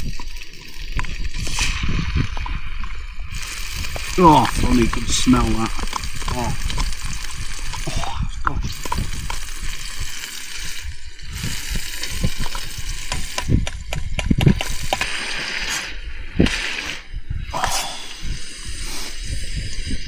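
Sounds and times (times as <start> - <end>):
stirring knocks and clicks: 0.0 - 10.6, 11.4 - 15.7.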